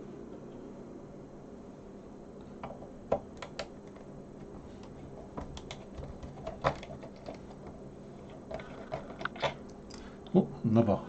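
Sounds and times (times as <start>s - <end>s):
plastic case being handled: 3.9s - 9.6s
screwdriver clicks and knocks: 5.3s - 7.8s.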